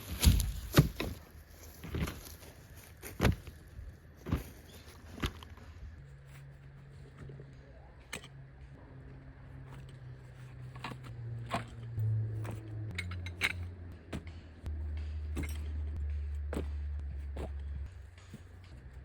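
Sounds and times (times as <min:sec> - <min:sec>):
soft background music: 0:06.0 - 0:19.0
metal gear clinking: 0:12.9 - 0:13.8.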